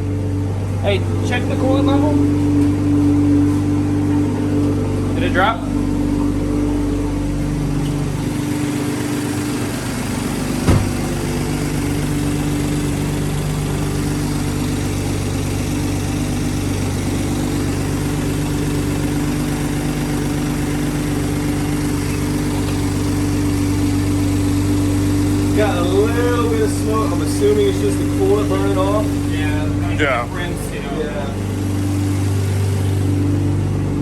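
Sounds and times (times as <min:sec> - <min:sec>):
car engine idling: 0:00.0 - 0:34.0
short knock: 0:10.6 - 0:11.1.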